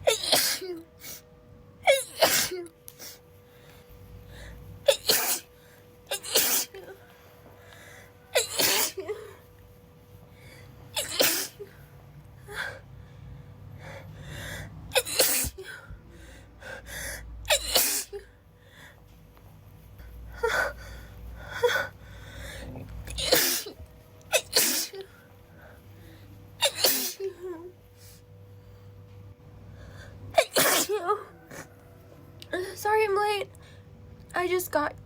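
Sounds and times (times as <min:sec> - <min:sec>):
woman sneezing: 0:00.1 - 0:00.8, 0:01.9 - 0:03.2, 0:04.8 - 0:05.5, 0:06.1 - 0:07.0, 0:08.3 - 0:09.4, 0:11.0 - 0:11.8, 0:14.9 - 0:15.8, 0:17.5 - 0:18.2, 0:23.1 - 0:25.1, 0:26.6 - 0:27.6, 0:30.4 - 0:31.3
quick breaths drawn in: 0:07.0 - 0:08.2.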